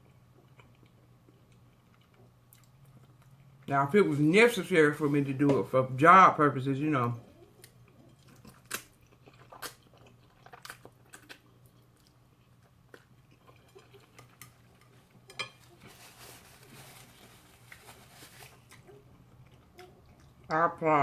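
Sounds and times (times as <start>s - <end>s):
person chewing food: 0.0s - 3.7s, 7.1s - 20.5s
soft rustling: 15.5s - 18.8s.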